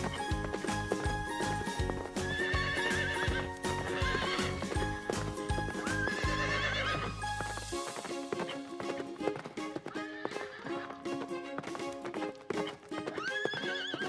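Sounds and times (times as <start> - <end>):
background music with steady beat: 0.0 - 10.1, 10.7 - 13.0
horse whinnying: 2.2 - 4.8, 5.9 - 7.2, 13.1 - 14.0.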